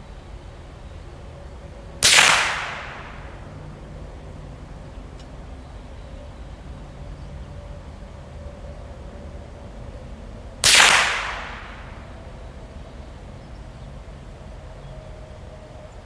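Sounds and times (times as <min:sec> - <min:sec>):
rifle shot: 0:02.0 - 0:03.4, 0:10.6 - 0:12.2.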